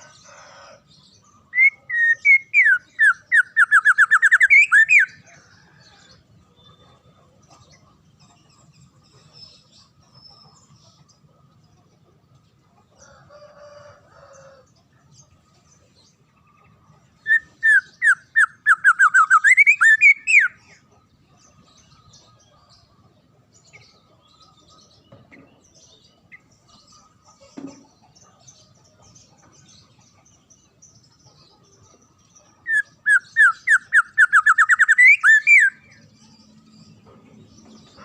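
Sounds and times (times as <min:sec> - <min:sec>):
other birds chirping: 0:00.0 - 0:38.0
songbird whistled notes: 0:01.5 - 0:05.2, 0:17.3 - 0:20.6, 0:32.7 - 0:35.9.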